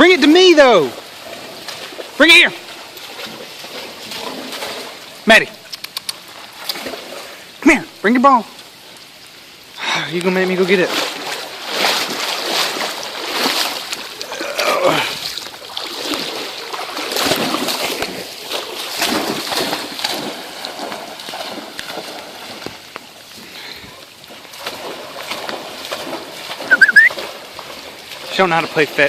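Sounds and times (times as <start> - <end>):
feet wading through water: 0.0 - 29.0.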